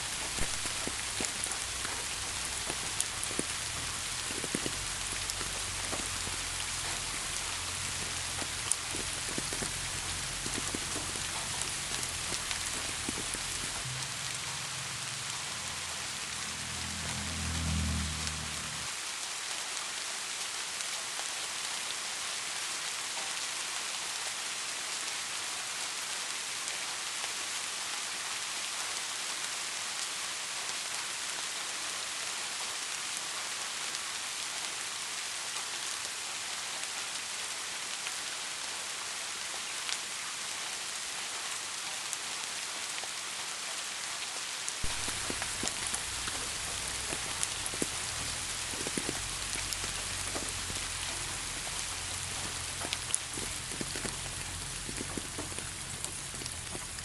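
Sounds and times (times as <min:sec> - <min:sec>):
raindrop ticks: 0:00.0 - 0:18.9, 0:44.8 - 0:57.0
steady rain: 0:00.0 - 0:57.0.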